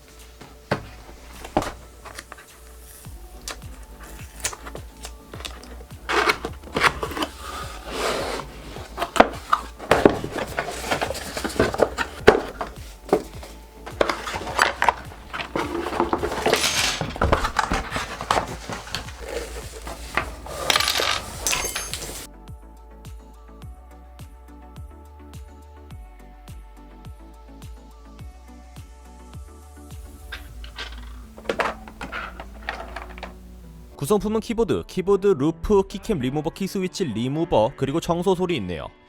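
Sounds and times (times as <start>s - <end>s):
packaging rustling: 0.0s - 22.3s, 30.0s - 34.0s
clicks and knocks of handled pieces: 0.1s - 22.3s, 30.1s - 34.0s.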